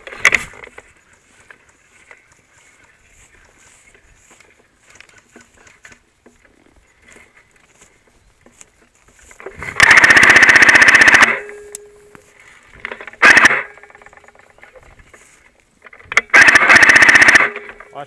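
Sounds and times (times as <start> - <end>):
toy machine gun rapid burst: 9.8 - 11.4, 13.2 - 13.7, 16.2 - 17.7.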